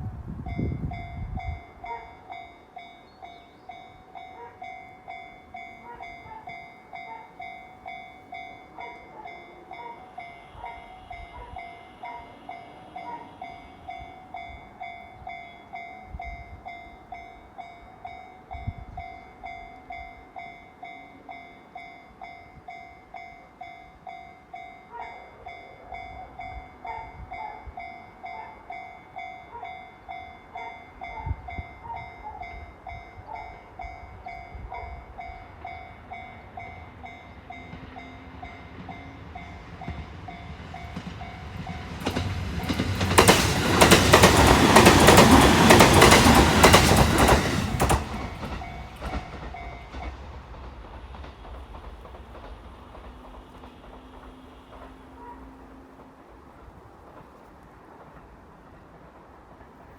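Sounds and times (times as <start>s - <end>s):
level-crossing alarm bell: 0.5s - 41.9s.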